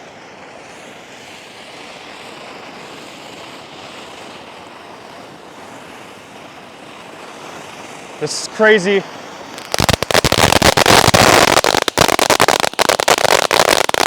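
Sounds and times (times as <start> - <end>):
firework fountain hissing sparks: 0.0 - 14.0.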